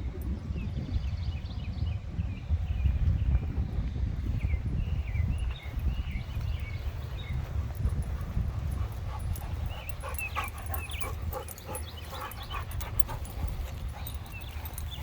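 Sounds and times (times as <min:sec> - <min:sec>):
dogs whining and yipping: 0:08.0 - 0:15.0.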